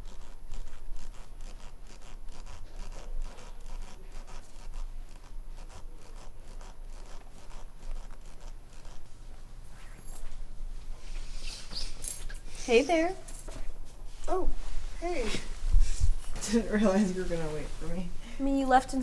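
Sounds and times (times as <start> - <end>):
scratchy scraping strokes: 0.0 - 10.0.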